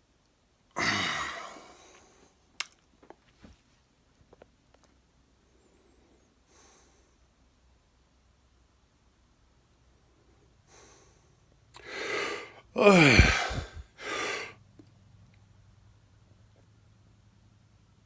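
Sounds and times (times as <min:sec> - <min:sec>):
man hiccuping: 0:00.8 - 0:01.6, 0:12.8 - 0:13.8
noisy breath: 0:05.4 - 0:07.4, 0:10.0 - 0:14.6.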